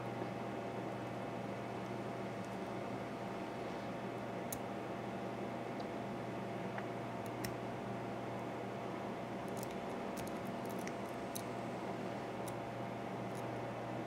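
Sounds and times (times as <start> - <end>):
steady hum: 0.0 - 14.0.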